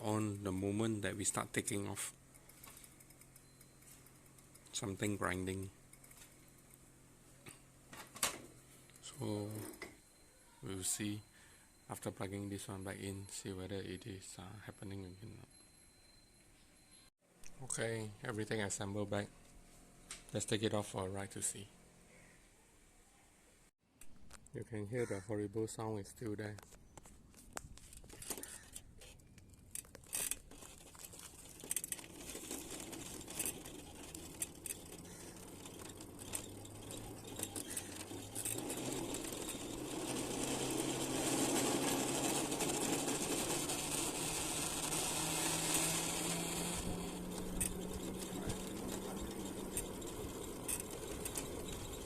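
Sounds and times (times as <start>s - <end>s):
electric scooter motor droning: 0.0s - 7.6s, 30.1s - 52.0s
road and wind noise: 43.0s - 52.0s.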